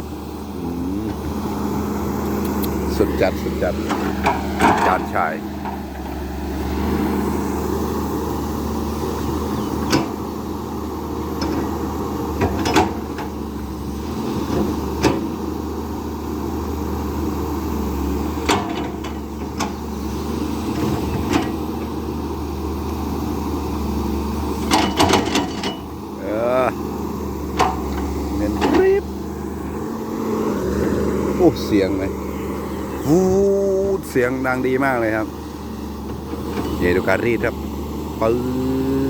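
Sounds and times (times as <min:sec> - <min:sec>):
excavator diesel engine humming: 0:00.0 - 0:39.0
metallic clanks of excavator arm: 0:03.8 - 0:06.2, 0:09.6 - 0:10.2, 0:12.3 - 0:13.4, 0:18.4 - 0:19.8, 0:20.7 - 0:21.6, 0:24.6 - 0:26.0, 0:27.5 - 0:29.0.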